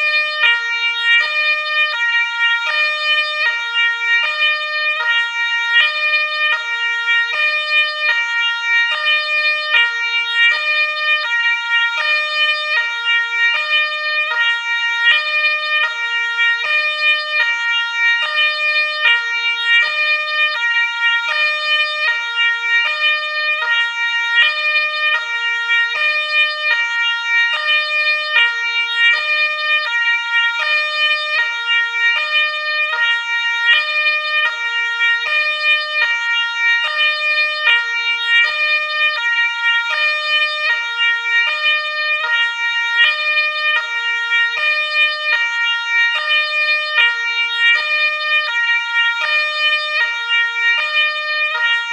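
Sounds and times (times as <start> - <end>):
two-tone ambulance siren: 0.0 - 51.9.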